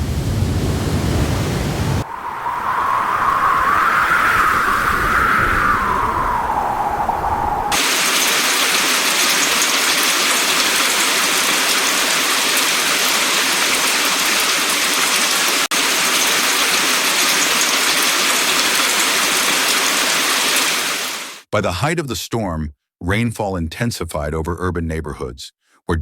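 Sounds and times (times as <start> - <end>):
heavy rain pouring: 0.0 - 2.1, 3.2 - 21.4.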